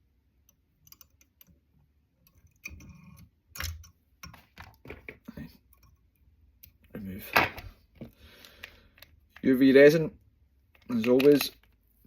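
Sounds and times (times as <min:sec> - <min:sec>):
handling noises: 0:10.6 - 0:12.0.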